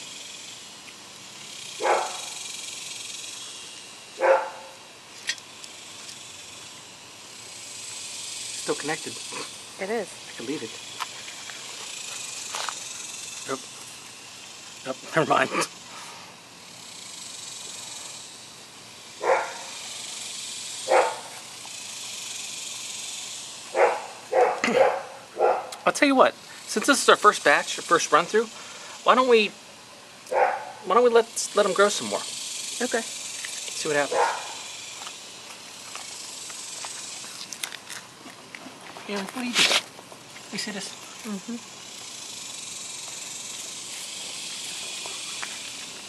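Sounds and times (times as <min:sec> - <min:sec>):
steady high hiss: 0:00.0 - 0:38.2, 0:39.1 - 0:46.0
dog barking: 0:01.8 - 0:02.4, 0:04.2 - 0:04.8, 0:19.2 - 0:19.8, 0:20.9 - 0:21.4, 0:23.7 - 0:25.8, 0:30.3 - 0:30.9, 0:34.1 - 0:34.6.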